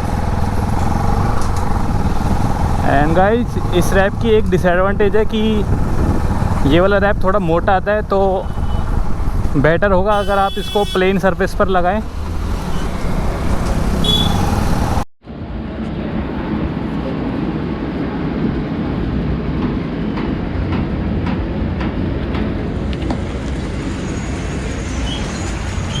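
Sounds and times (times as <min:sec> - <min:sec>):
motorcycle road rumble: 0:00.0 - 0:19.3.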